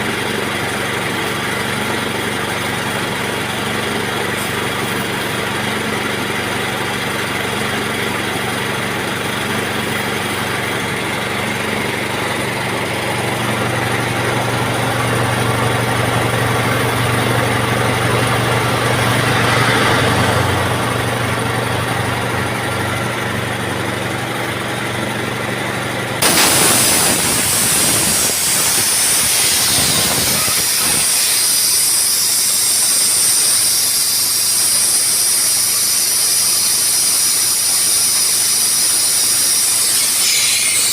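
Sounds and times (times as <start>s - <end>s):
motor machine humming: 0.0s - 38.0s
hissing air rush: 26.2s - 32.0s.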